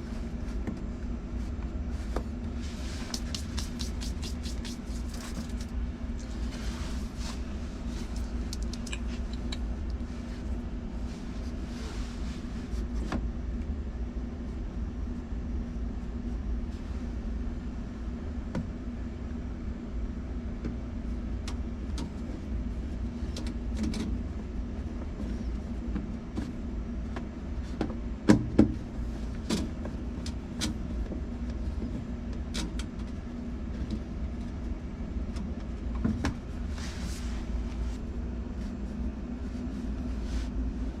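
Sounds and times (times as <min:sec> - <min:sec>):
low mechanical hum: 0:00.0 - 0:41.0
light clicks and taps: 0:08.0 - 0:10.0.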